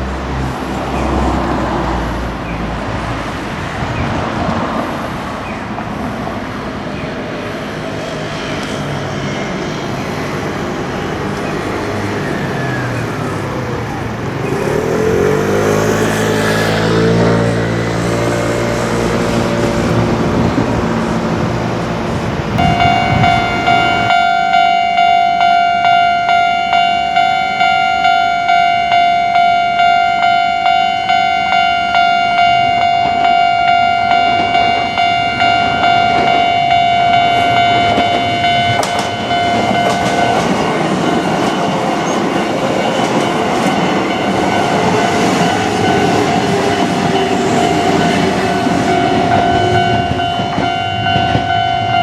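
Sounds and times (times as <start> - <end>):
passing vehicle motor whining: 0.0 - 52.0
train noise: 0.0 - 52.0
level crossing warning bell: 22.6 - 52.0.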